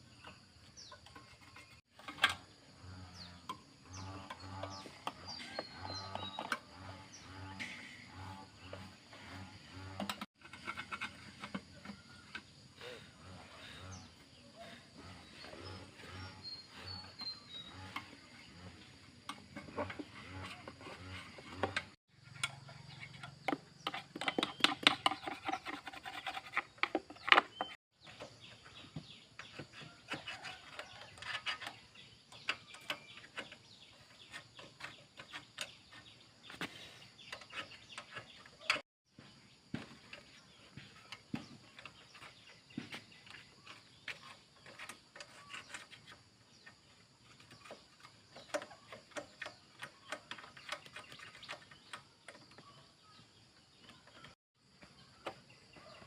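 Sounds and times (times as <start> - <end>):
hand tools and metal parts clinking: 0.6 - 38.8.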